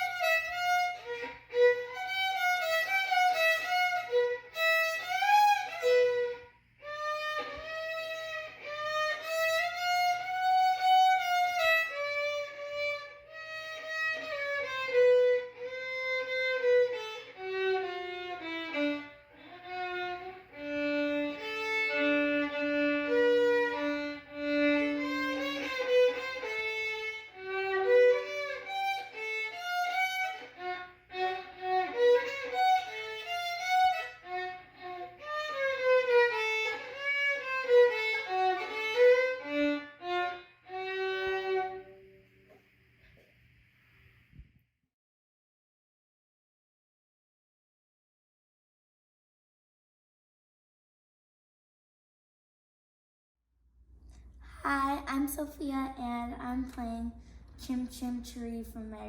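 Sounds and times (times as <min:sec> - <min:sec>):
solo violin melody: 0:00.0 - 0:42.5.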